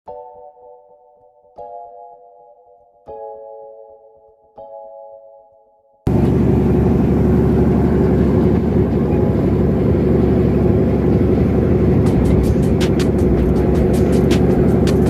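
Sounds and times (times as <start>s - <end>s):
engine droning: 6.1s - 15.0s
sharp high ticks: 12.1s - 15.0s.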